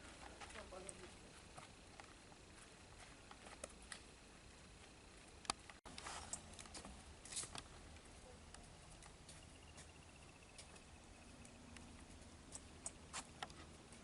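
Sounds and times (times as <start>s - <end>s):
footsteps on dirt trail: 0.0s - 5.0s.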